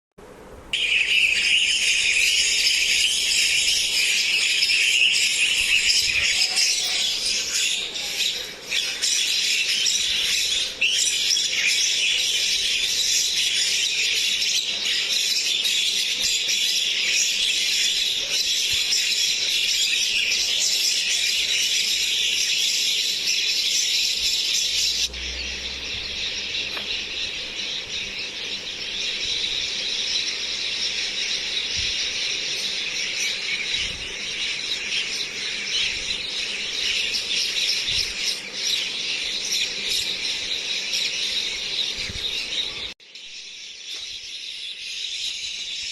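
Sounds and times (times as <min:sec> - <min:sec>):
mynas chattering and squealing: 0:05.5 - 0:09.4.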